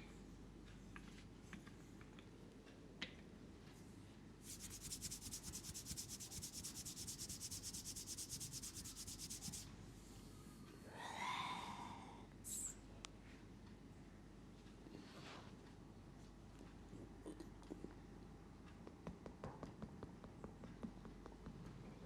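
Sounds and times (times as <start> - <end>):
massage rubbing strokes: 4.4 - 9.7.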